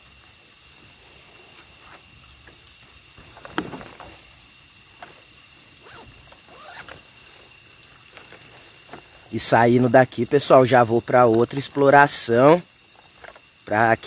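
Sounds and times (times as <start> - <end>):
rasping scrapes of gear handled: 5.8 - 7.0.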